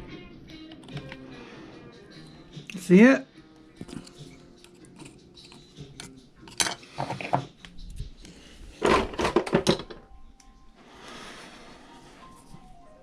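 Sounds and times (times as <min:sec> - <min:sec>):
metal tools tapping metal parts: 0:05.0 - 0:07.5, 0:08.8 - 0:10.0.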